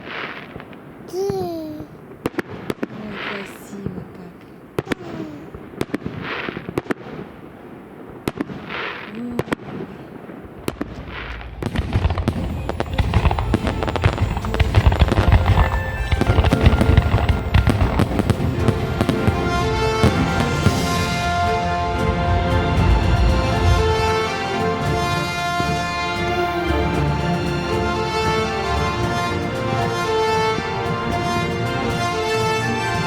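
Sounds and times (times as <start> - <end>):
firework bangs and crackling bursts: 0.0 - 33.0
music: 12.2 - 33.0.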